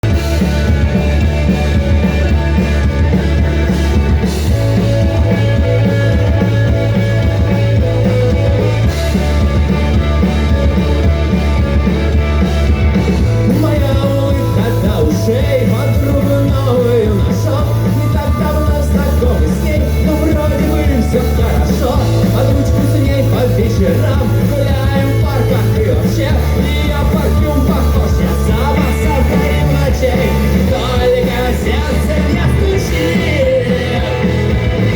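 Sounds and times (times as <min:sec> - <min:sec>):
song with bass line: 0:00.0 - 0:34.9
person singing: 0:13.4 - 0:34.9.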